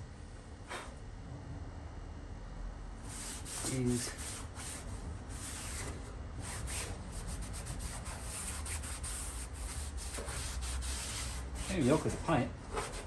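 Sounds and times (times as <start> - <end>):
hand scrubbing metal panel: 3.1 - 13.0.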